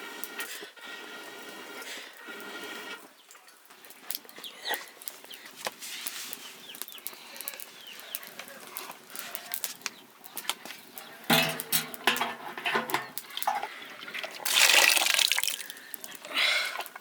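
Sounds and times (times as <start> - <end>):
kitchen utensils clicking and knocking: 11.3 - 13.7
water pouring and splashing: 11.3 - 16.9.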